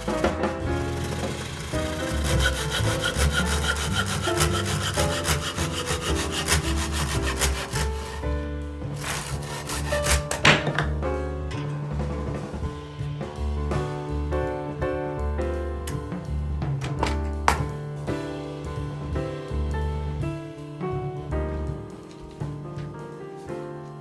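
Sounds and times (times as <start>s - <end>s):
background music: 0.0s - 24.0s
hand saw cutting wood: 0.8s - 10.9s.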